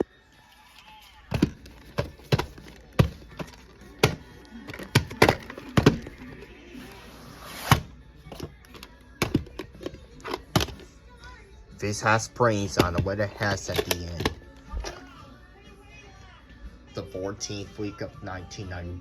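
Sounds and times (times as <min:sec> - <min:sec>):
hard plastic tape case clicking: 0:01.3 - 0:06.4, 0:07.7 - 0:10.9, 0:12.6 - 0:15.0.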